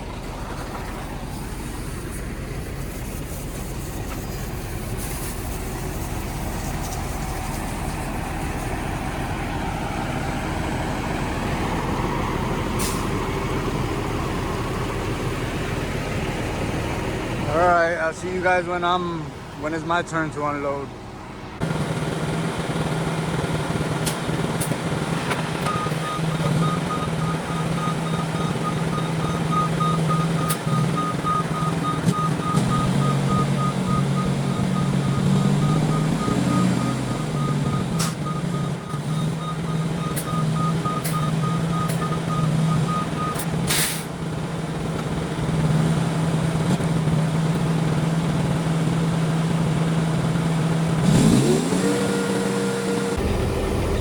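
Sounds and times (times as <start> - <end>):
diesel truck engine running: 0.0 - 54.0
reversing alarm beeping: 25.7 - 43.5.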